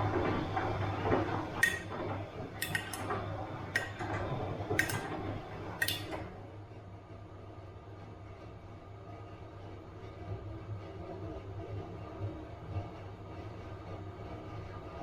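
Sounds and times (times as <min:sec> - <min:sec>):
washing machine load tumbling: 0:00.0 - 0:06.4
washing machine motor hum: 0:00.0 - 0:06.7
hard object clinking in drum: 0:01.6 - 0:01.9, 0:02.6 - 0:03.1, 0:04.8 - 0:05.1.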